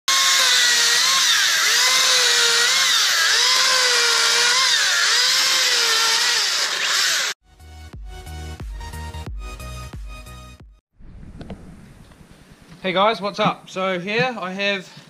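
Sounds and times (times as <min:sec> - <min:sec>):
electric chainsaw cutting wood: 0:00.1 - 0:07.4.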